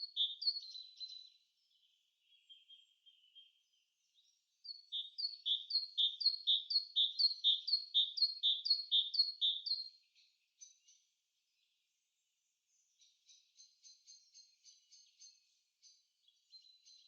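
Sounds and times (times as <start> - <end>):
songbird singing two-note phrases: 4.7 - 9.9.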